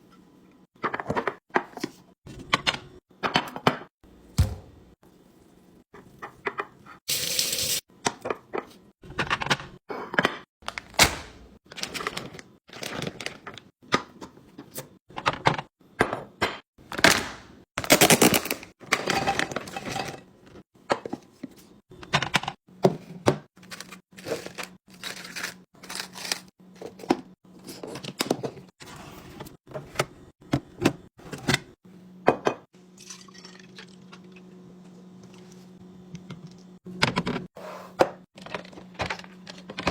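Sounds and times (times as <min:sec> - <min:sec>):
food packaging crinkling and clicking: 0:11.7 - 0:13.7, 0:17.8 - 0:19.9, 0:23.6 - 0:28.6.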